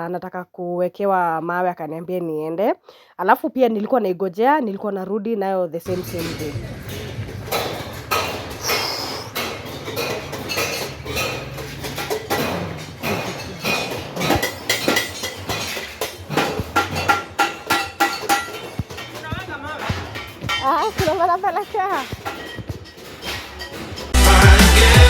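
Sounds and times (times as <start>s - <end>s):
metallic clinks and knocks: 5.9s - 24.2s.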